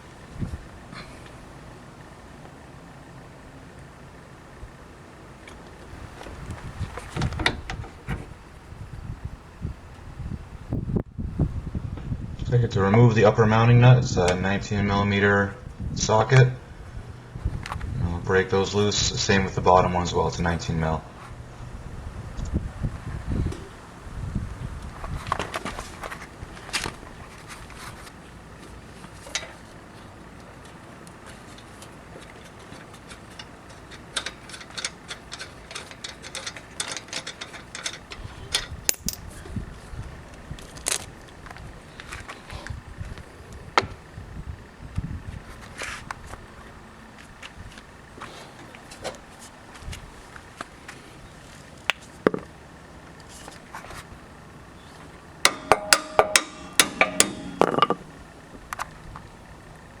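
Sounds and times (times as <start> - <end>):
metal clinks and clanks: 32.5 - 39.4, 55.4 - 58.5
sharp metal clinks: 38.6 - 39.3, 55.4 - 58.4.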